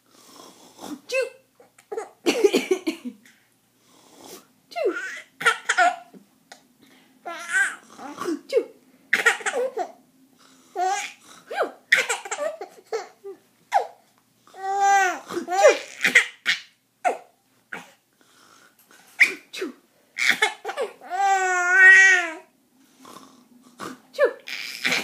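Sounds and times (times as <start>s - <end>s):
baby drawn-out vocal sounds: 7.2s - 8.4s, 14.5s - 16.4s, 20.2s - 22.5s, 23.8s - 25.0s
baby laughing: 24.4s - 25.0s.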